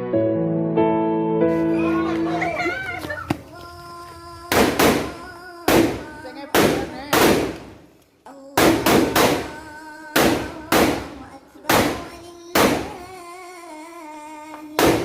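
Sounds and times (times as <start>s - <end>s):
loud sharp bangs: 4.5s - 7.9s, 8.6s - 13.1s, 14.8s - 15.0s.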